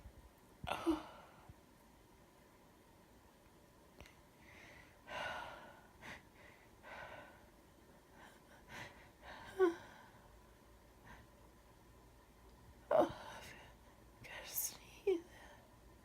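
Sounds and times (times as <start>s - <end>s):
woman gasping breaths: 4.4s - 7.4s.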